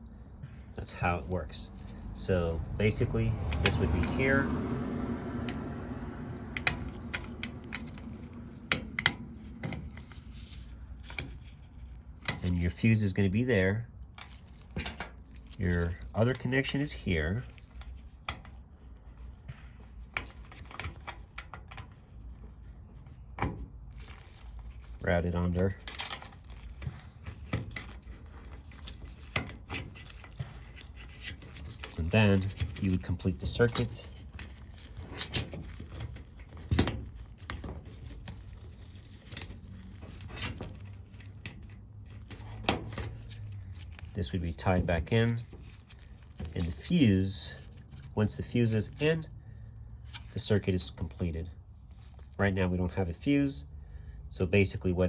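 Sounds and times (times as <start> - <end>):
hands rubbing wires: 5.4 - 49.2.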